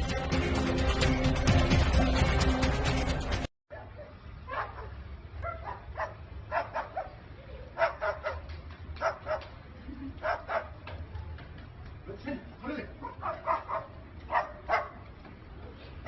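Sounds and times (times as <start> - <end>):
dog barking: 3.7 - 7.2, 7.8 - 9.5, 10.2 - 10.8, 13.0 - 15.0.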